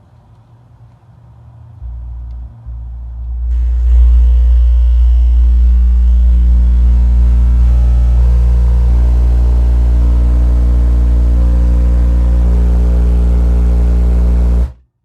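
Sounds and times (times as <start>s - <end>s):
subwoofer deep bass tone: 1.8s - 14.8s.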